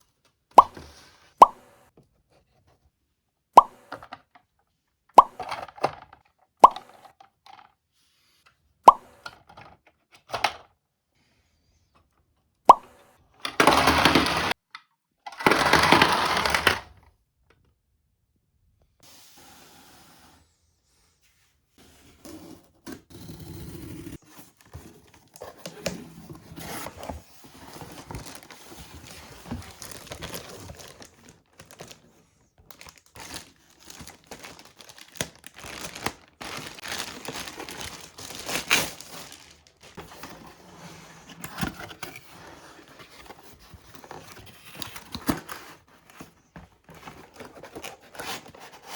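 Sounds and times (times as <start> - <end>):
toy packaging crinkling and tearing: 15.3 - 16.8, 27.8 - 40.5.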